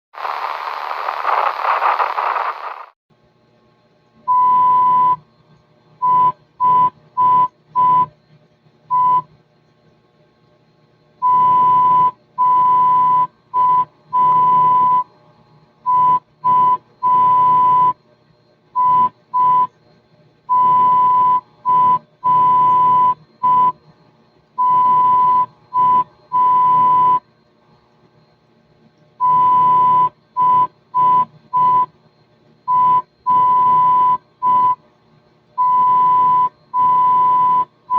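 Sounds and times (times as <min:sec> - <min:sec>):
faint hum and hiss: 0:00.2 - 0:37.9
morse code beeps: 0:04.3 - 0:05.2, 0:11.2 - 0:15.1, 0:15.9 - 0:18.0, 0:20.5 - 0:23.8, 0:24.6 - 0:27.2, 0:29.2 - 0:31.9, 0:32.7 - 0:34.8, 0:35.6 - 0:37.7.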